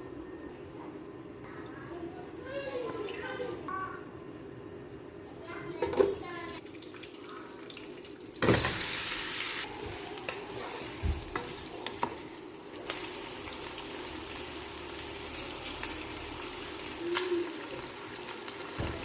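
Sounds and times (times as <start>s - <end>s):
food sizzling in a hot pan: 6.5s - 19.0s.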